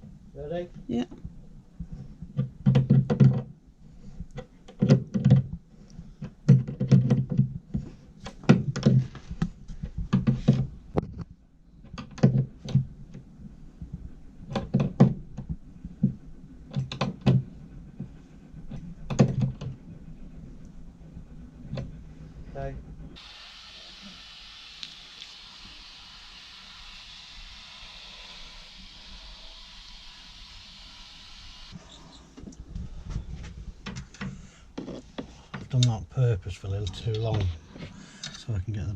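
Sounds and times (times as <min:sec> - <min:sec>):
pipe knocking and thunking: 0:01.1 - 0:03.6, 0:04.3 - 0:13.2, 0:14.5 - 0:19.8.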